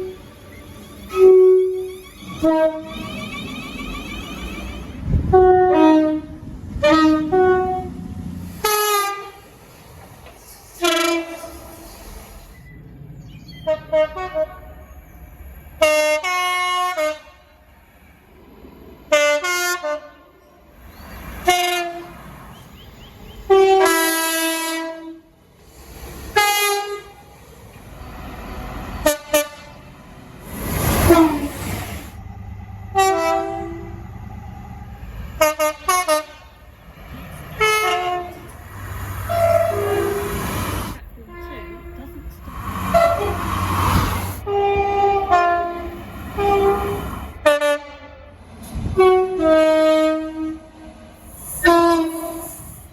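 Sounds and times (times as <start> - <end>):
locomotive air horn blasts: 1.1 - 9.5, 10.8 - 11.9, 13.6 - 14.9, 15.8 - 17.6, 19.1 - 20.3, 21.4 - 22.2, 23.5 - 25.3, 26.3 - 27.3, 29.0 - 29.9, 32.9 - 34.0, 35.3 - 36.6, 37.5 - 38.6, 39.2 - 52.9.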